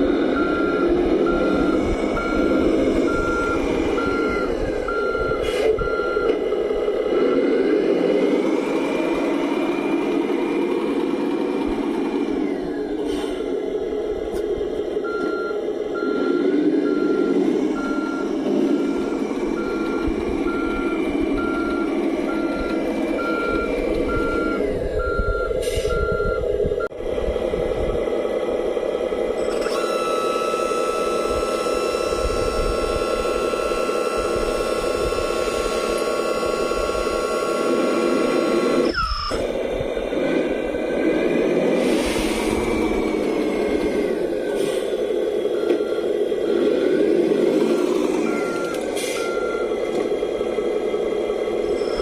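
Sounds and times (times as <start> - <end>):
diesel engine drone: 0.0 - 52.0
reversing beeps: 0.4 - 6.4, 15.0 - 26.4, 29.4 - 39.5, 42.7 - 49.8.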